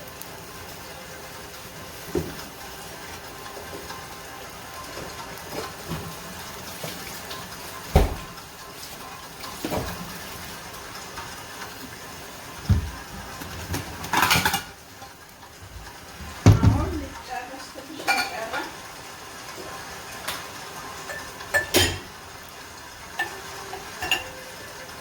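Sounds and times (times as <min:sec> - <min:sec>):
chicken sizzling in a pot: 0:00.0 - 0:25.0
cookware knocking: 0:16.2 - 0:17.2, 0:21.1 - 0:22.1.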